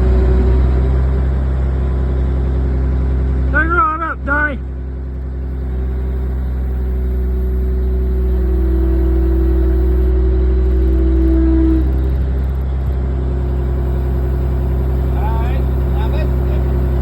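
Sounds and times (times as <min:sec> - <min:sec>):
excavator diesel engine working: 0:00.0 - 0:17.0
higher steady tone: 0:05.4 - 0:17.0.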